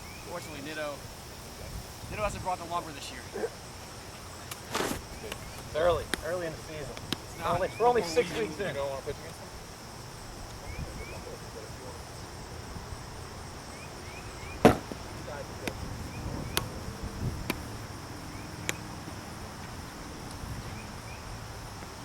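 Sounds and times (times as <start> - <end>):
high insect drone: 0.0 - 22.0
plastic bat striking ball: 14.6 - 15.8.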